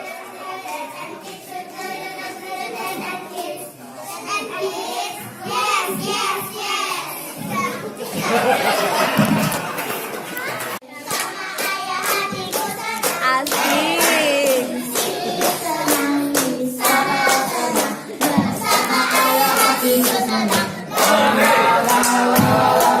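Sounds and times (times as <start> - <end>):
hand claps: 9.2 - 23.0
group singing cheer song: 10.8 - 23.0.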